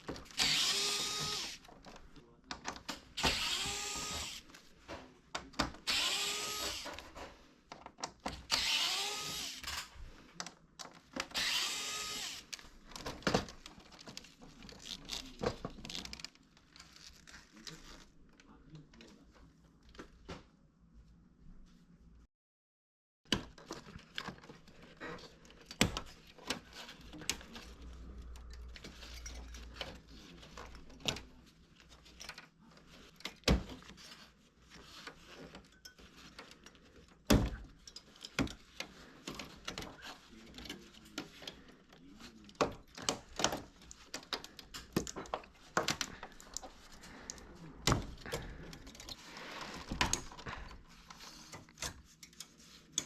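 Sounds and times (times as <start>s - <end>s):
hard plastic parts clicking: 36.3s - 53.0s.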